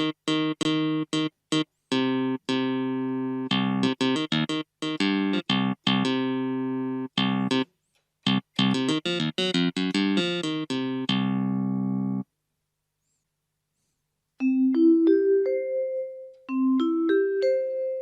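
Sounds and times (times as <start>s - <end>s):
keyboard clavinet notes: 0.0s - 12.2s.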